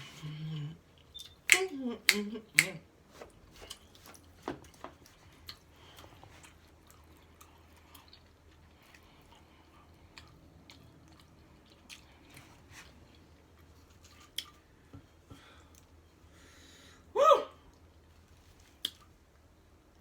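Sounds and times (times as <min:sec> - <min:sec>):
chewing food: 0:00.0 - 0:15.0
wet mouth clicks: 0:01.1 - 0:02.8.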